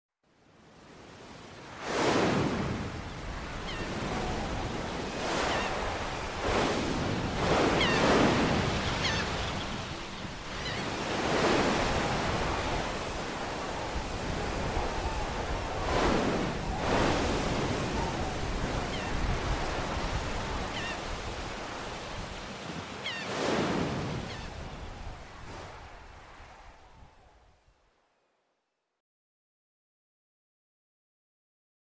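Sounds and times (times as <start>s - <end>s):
waves breaking against rocks: 1.7s - 24.4s.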